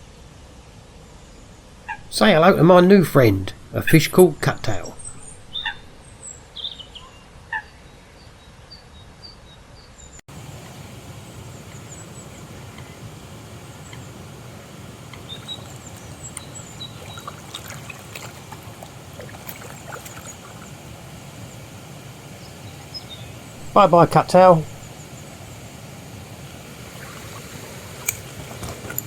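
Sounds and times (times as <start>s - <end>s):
steady rushing noise: 1.7s - 6.2s
small birds chirping: 3.6s - 29.0s.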